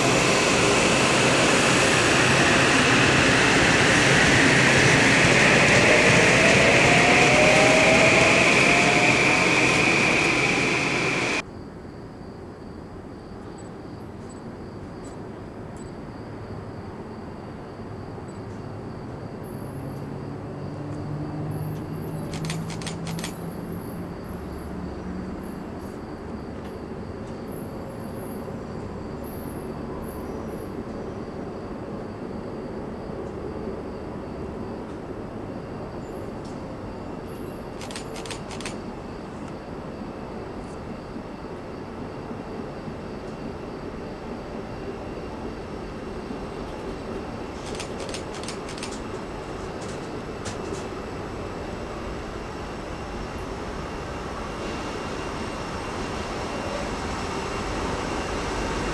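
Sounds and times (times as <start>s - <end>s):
wheels squealing: 0.0s - 11.4s
train rumbling on rails: 0.0s - 11.5s, 16.4s - 58.9s.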